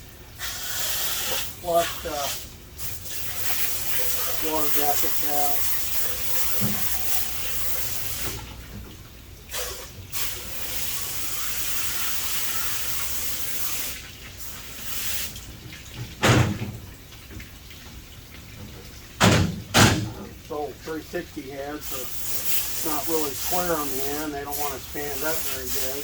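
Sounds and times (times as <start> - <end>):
hose water spray hissing: 0.4 - 8.5, 9.5 - 15.4, 20.1 - 26.0
heavy knocks: 18.7 - 20.4.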